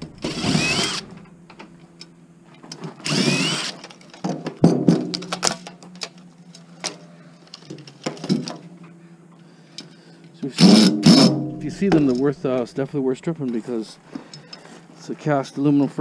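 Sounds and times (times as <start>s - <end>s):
power drill running: 0.0s - 1.2s, 3.0s - 3.8s
steady low hum: 0.0s - 16.0s.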